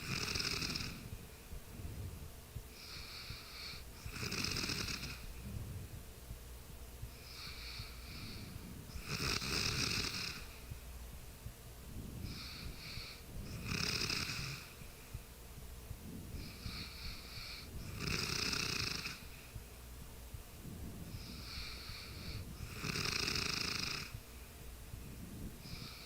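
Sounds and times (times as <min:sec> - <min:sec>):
person snoring: 0:00.0 - 0:01.1, 0:02.8 - 0:05.2, 0:07.2 - 0:10.5, 0:12.3 - 0:14.7, 0:16.4 - 0:19.3, 0:21.1 - 0:24.2
soft breathing: 0:00.0 - 0:06.1, 0:07.0 - 0:26.0.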